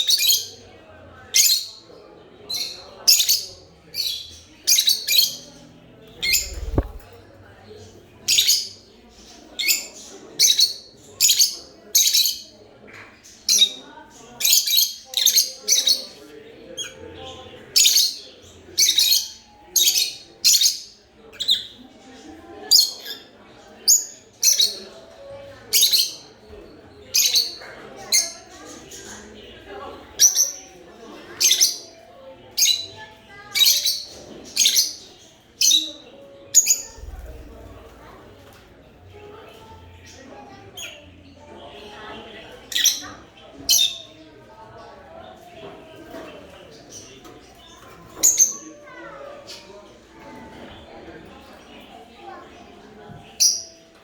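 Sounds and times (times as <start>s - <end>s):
soft bird chatter: 0.0s - 54.0s
lovebirds chirping: 6.1s - 7.2s.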